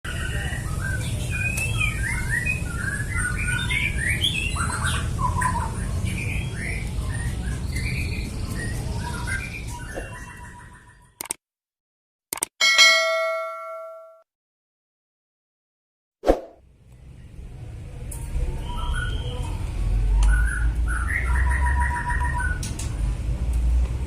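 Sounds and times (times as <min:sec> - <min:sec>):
songbirds chirping: 0:00.1 - 0:11.2, 0:18.2 - 0:23.2.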